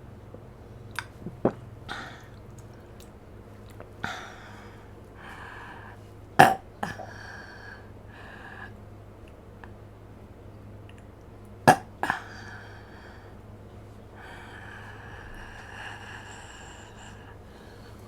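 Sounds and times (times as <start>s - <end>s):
woman burping: 6.4s - 7.1s, 11.7s - 12.3s.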